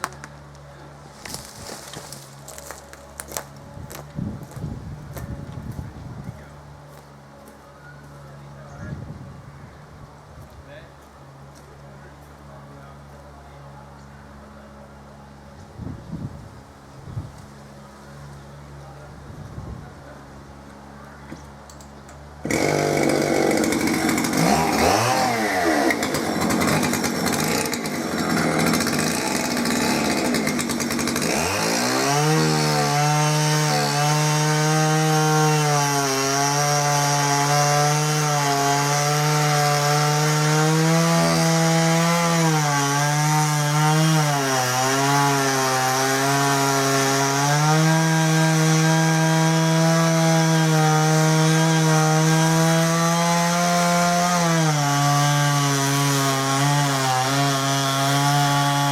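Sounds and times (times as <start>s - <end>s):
chainsaw cutting wood: 1.1s - 4.6s, 22.4s - 58.9s.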